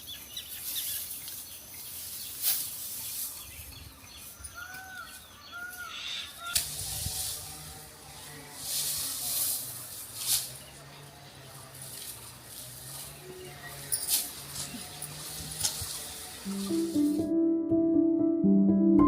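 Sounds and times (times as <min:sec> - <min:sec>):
dry wheat stalks rustling: 0:00.4 - 0:17.2
stalks snapping: 0:06.5 - 0:06.9.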